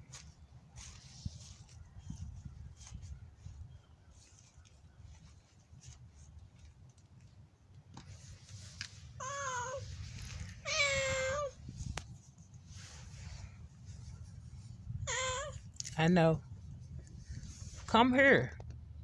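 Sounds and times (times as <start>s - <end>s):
injured cat meowing: 9.2s - 10.0s, 10.6s - 11.6s, 15.1s - 15.6s.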